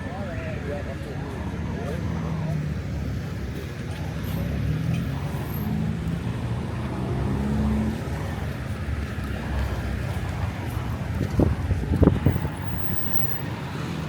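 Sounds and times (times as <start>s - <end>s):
road traffic passing: 0.0s - 14.0s.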